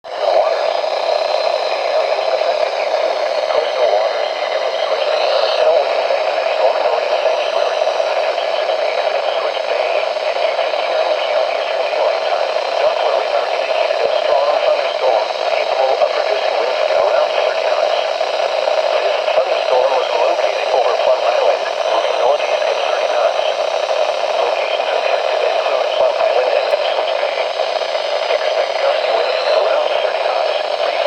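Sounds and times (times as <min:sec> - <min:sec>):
radio static: 0:00.0 - 0:31.0.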